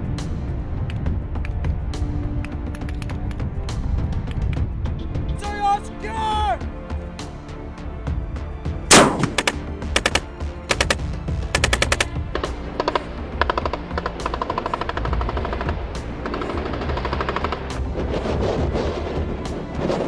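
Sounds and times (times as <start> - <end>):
background music: 0.0 - 20.0
automatic gunfire: 8.9 - 11.0, 11.6 - 12.1.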